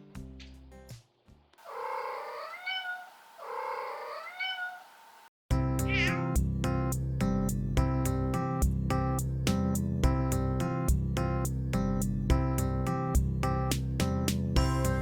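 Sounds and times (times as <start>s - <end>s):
cat meowing: 1.6s - 5.2s, 5.9s - 6.4s
background guitar music: 5.6s - 15.0s.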